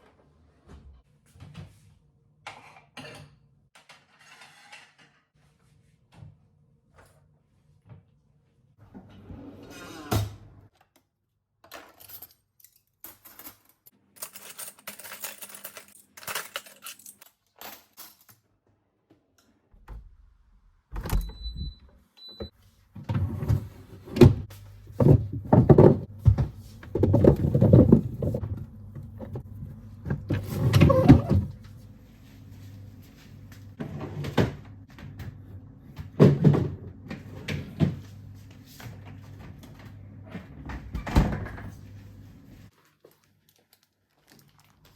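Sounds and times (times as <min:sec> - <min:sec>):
objects clicking and clattering: 0:11.6 - 0:18.5.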